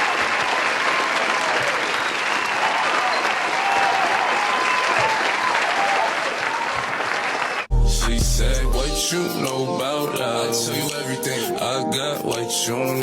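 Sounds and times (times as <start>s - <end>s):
crowd clapping and cheering: 0.0s - 8.2s
high whoops: 1.0s - 6.8s
hip hop beat with deep bass: 7.7s - 13.0s.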